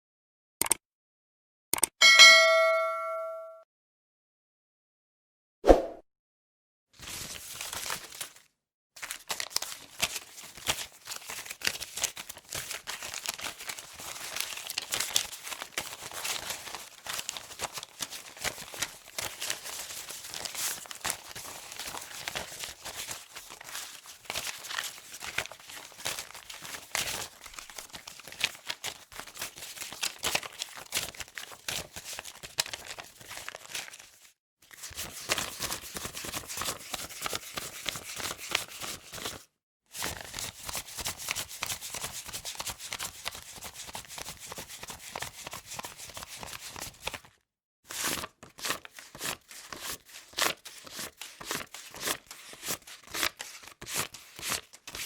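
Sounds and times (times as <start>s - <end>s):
paper money rustling: 7.0s - 39.4s, 40.0s - 47.3s.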